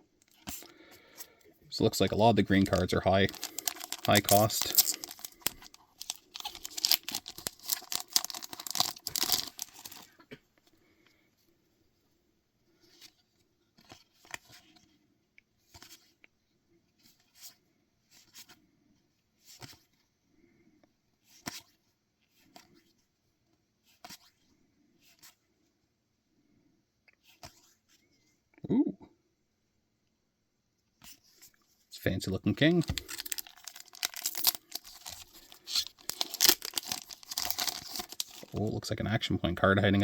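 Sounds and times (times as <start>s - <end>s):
wrapper crinkling and tearing: 1.8s - 10.2s, 32.6s - 38.6s.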